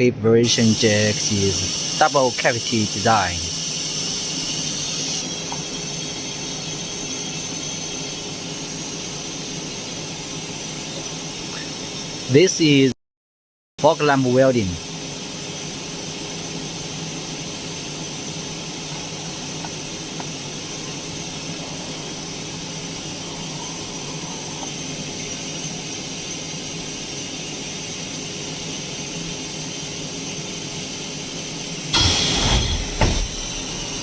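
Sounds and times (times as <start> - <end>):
welding machine humming: 0.5 - 11.0, 31.9 - 34.0
loud burst of noise: 31.9 - 34.0.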